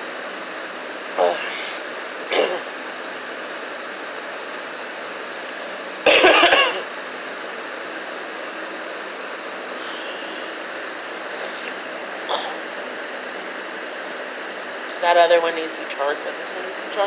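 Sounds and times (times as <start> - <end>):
person coughing: 2.3 - 2.6, 6.1 - 6.9.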